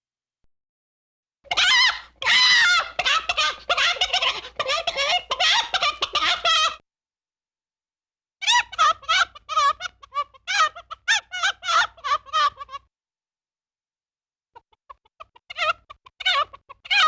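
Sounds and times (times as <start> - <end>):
high-pitched squeaky giggling voice: 1.5 - 6.8, 8.4 - 12.9, 14.6 - 17.0.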